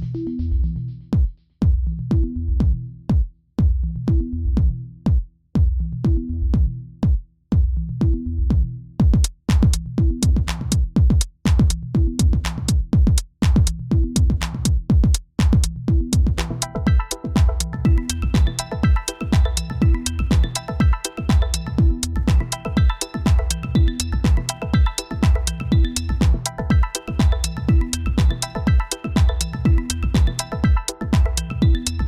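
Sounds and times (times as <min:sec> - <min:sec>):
electronic music with drum-machine beat: 0:09.0 - 0:32.0.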